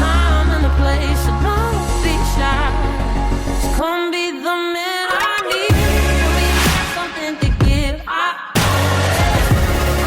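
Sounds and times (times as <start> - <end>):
heavy bass line: 0.0 - 3.8, 5.7 - 7.8, 8.6 - 10.0
person singing pop melody: 0.0 - 10.0.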